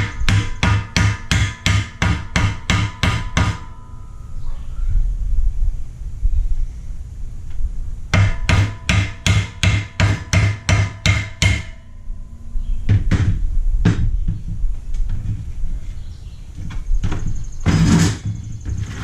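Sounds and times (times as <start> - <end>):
hammer striking metal plate: 0.0 - 4.2, 8.1 - 12.0.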